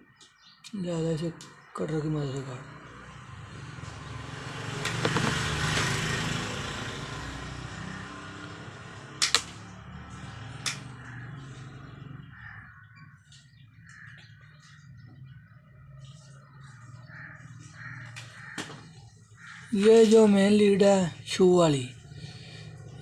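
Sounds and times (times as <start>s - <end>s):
wire cutter snipping: 9.2s - 9.6s, 10.6s - 10.9s.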